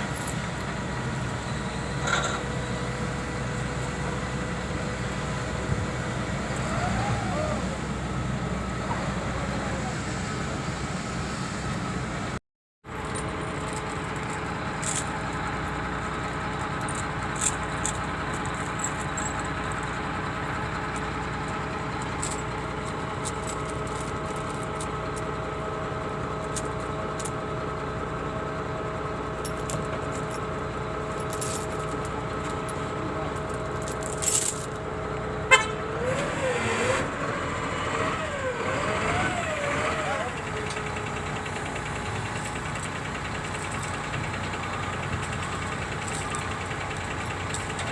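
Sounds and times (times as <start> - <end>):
diesel machinery droning: 0.0 - 47.9
light metallic clinks: 13.0 - 16.0, 31.1 - 32.8, 33.4 - 34.8, 42.2 - 47.9.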